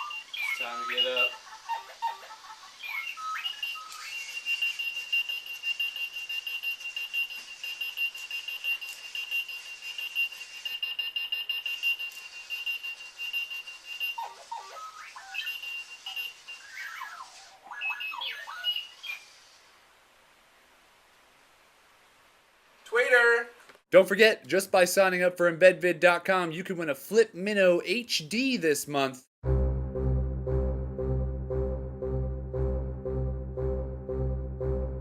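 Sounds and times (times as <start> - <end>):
rapid high-pitched beeping: 0.0 - 1.4, 2.8 - 16.8
warbling electronic chirps: 0.0 - 1.4, 2.7 - 19.2.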